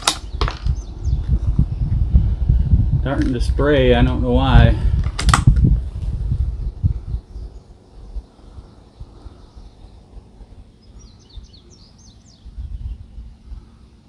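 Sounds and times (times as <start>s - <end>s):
low rumbling background noise: 0.0s - 14.0s
small bird chirping: 6.6s - 13.2s.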